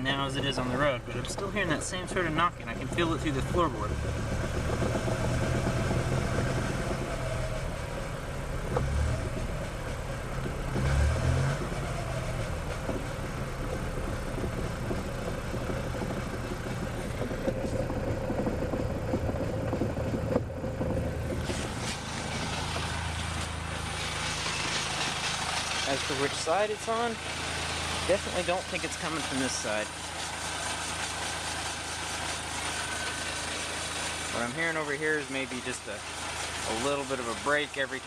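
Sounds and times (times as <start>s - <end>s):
car engine running: 0.0s - 38.0s
knocking from front axle: 10.3s - 34.9s.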